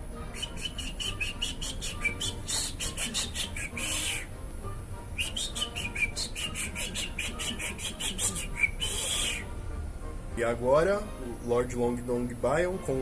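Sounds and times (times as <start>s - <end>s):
imitated bird chirping: 0.3s - 4.3s, 5.2s - 9.5s
short hissing bursts: 0.4s - 4.3s, 5.3s - 9.5s.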